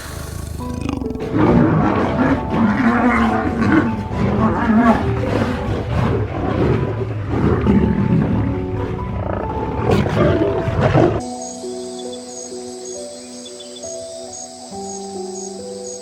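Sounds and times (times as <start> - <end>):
lioness roaring: 0.0 - 11.2
soft background music: 0.2 - 16.0.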